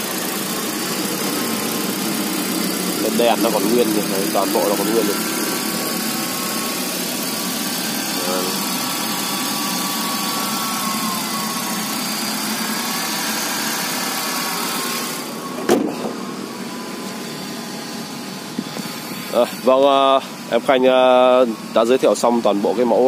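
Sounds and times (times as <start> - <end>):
car engine idling: 0.0 - 22.7
sharp thump: 15.6 - 16.2.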